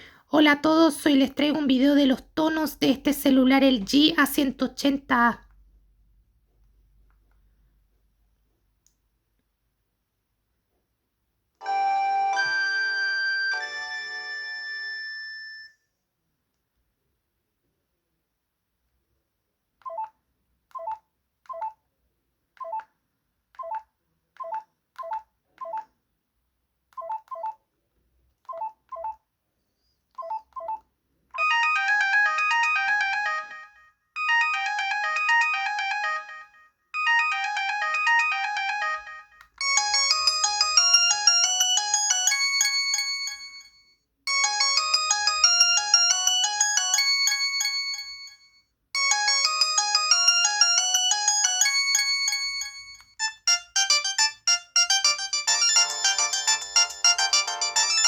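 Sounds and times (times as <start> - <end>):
synthesized ringtone melody: 11.6 - 15.8, 31.4 - 58.0.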